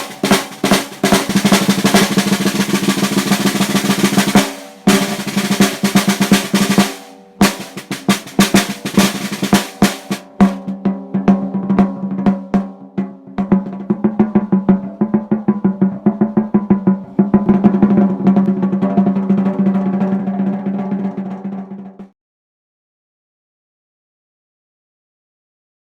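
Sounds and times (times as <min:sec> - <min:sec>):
snare drum hits and roll: 0:00.0 - 0:22.2.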